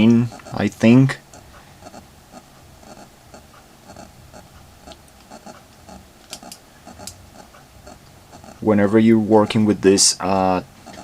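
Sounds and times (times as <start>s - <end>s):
faint even ticking: 0.0s - 11.0s
sharp small clicks: 4.8s - 8.6s.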